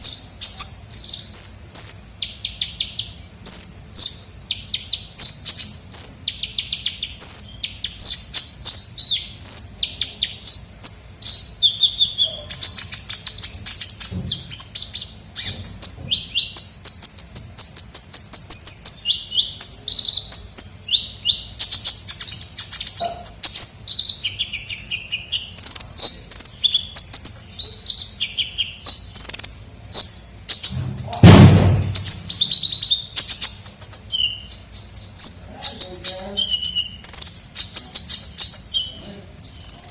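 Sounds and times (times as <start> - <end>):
sunbird singing: 0.0 - 39.9
dull thump: 30.7 - 32.5.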